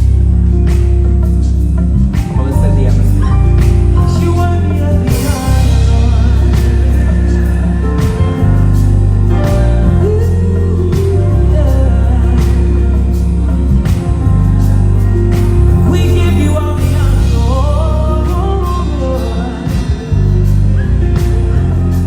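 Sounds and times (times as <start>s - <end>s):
electric bass low notes: 0.0s - 22.0s
gospel singers: 0.0s - 22.0s
drum hits: 2.0s - 10.3s, 12.4s - 18.8s.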